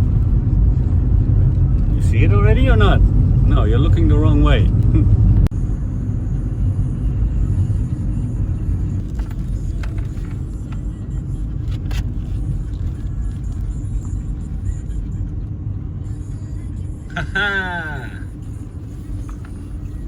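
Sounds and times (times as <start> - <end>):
car road rumble inside cabin: 0.0 - 20.0.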